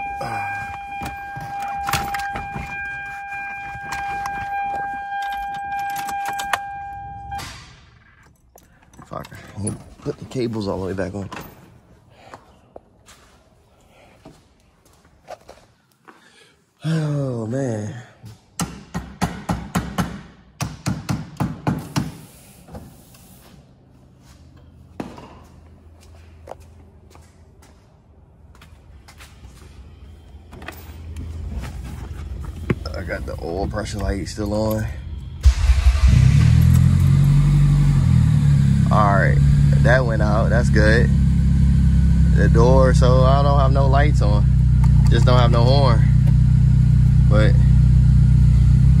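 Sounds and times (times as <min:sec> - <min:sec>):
car horn sounding: 0:00.0 - 0:07.4.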